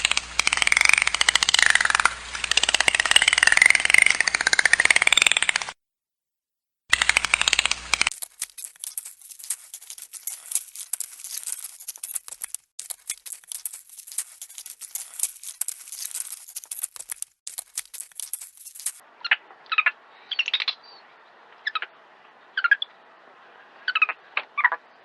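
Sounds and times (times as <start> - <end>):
dense crackling and rustling: 0.0 - 5.8, 6.9 - 19.0.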